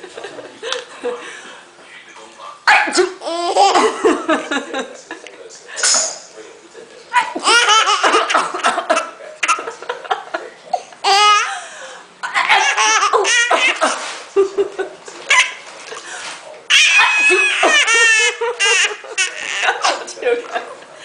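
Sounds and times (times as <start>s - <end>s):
baby laughing: 2.9s - 4.4s, 7.2s - 14.2s, 15.2s - 15.7s, 16.7s - 20.2s.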